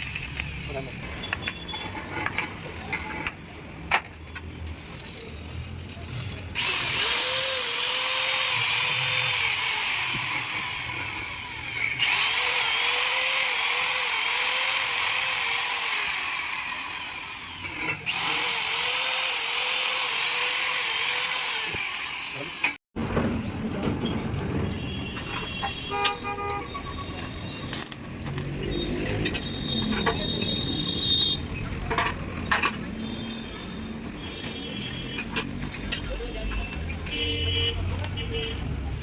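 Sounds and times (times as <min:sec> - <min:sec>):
power tool running under load: 0:06.6 - 0:22.8.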